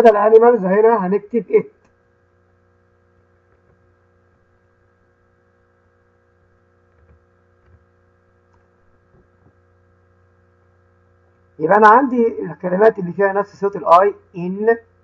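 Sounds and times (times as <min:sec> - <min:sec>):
faint electrical hum: 0:00.0 - 0:15.0.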